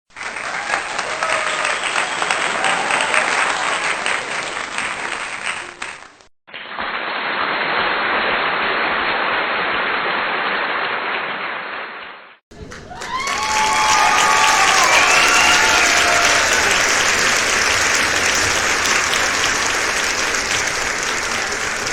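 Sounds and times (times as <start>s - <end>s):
crowd applause: 0.1s - 6.3s, 12.5s - 21.9s.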